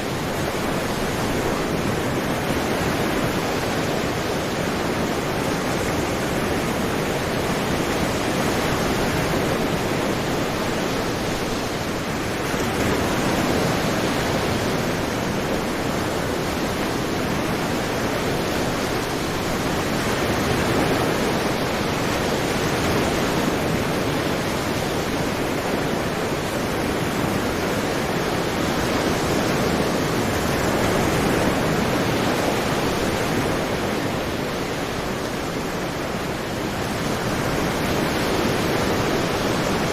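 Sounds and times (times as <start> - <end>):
sea waves washing ashore: 0.0 - 39.9.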